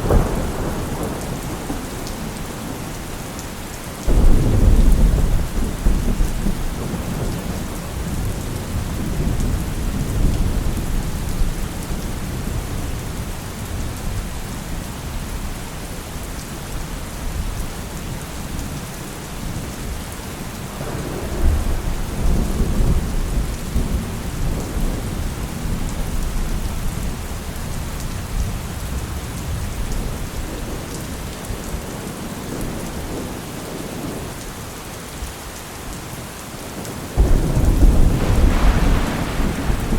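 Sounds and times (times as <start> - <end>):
rolling thunder: 0.0 - 2.9, 4.1 - 12.9, 20.8 - 27.2, 37.2 - 39.9
heavy rain falling: 0.0 - 39.9.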